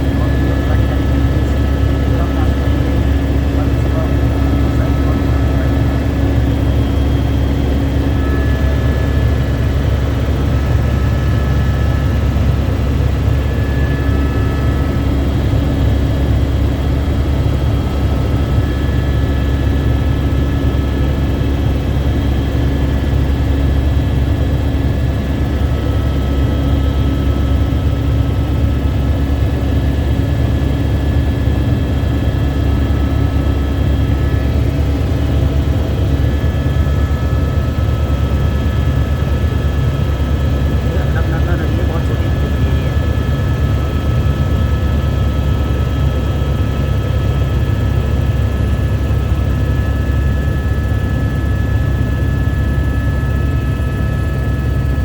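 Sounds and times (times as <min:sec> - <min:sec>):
faint high whines: 0:00.0 - 0:21.2
helicopter rotor and turbine rumble: 0:00.0 - 0:55.0.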